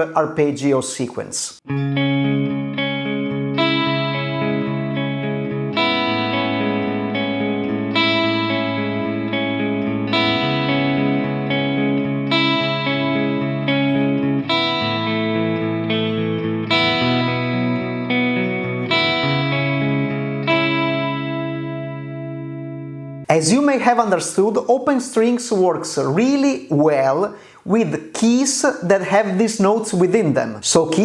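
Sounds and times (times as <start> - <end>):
electric guitar arpeggios: 1.7 - 23.3.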